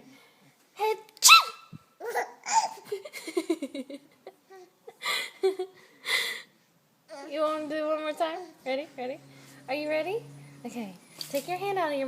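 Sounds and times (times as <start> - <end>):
baby laughing: 2.0 - 3.3.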